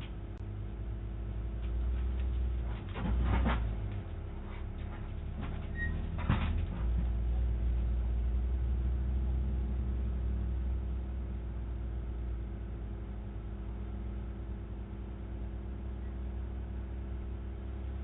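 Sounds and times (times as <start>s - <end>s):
heavy engine rumbling: 0.0s - 18.0s
brief clatter: 1.7s - 7.2s.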